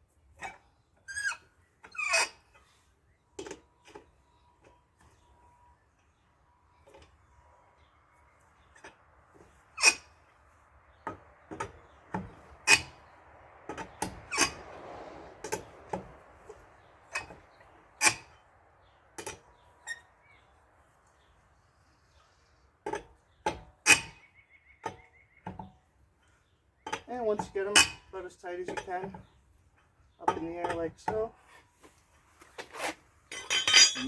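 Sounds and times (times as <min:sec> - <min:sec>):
lug wrench clanking on lug nuts: 0:33.3 - 0:34.0.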